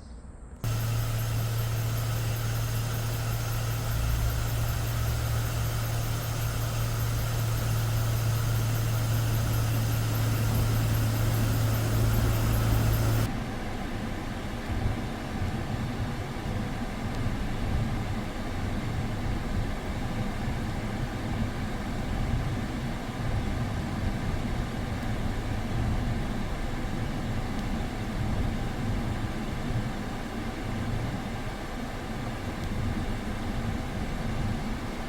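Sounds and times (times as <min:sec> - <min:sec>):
car engine idling: 0:00.6 - 0:13.3
air conditioning running: 0:00.6 - 0:35.0.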